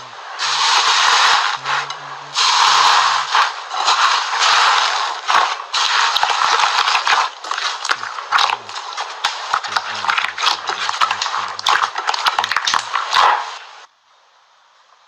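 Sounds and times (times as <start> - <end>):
slime crackling and popping: 2.4 - 13.7.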